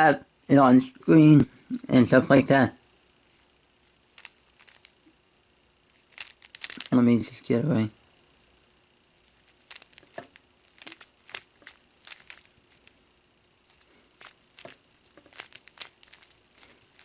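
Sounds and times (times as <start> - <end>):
puzzle cube clicking: 4.1 - 4.9, 6.0 - 7.0, 9.3 - 13.0, 13.6 - 17.0.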